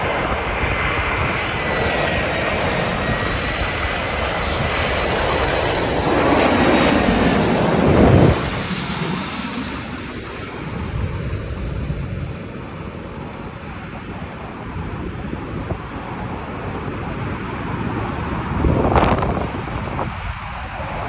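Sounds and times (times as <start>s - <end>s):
jet airliner passing by: 0.0s - 21.0s.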